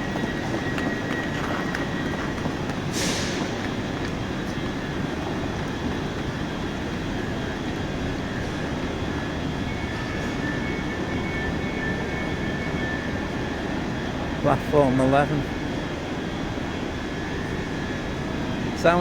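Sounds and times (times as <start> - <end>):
faint high whine: 0.0 - 19.0
low rumble of trains: 0.0 - 19.0.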